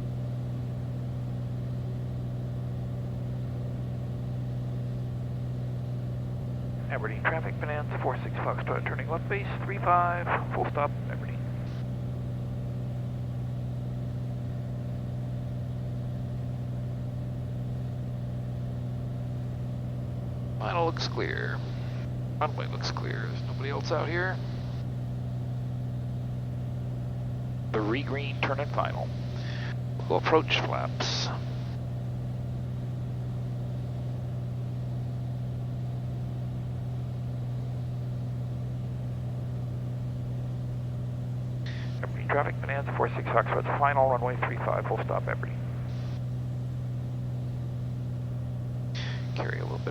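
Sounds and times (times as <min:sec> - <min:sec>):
propeller plane engine droning: 0:00.0 - 0:49.9.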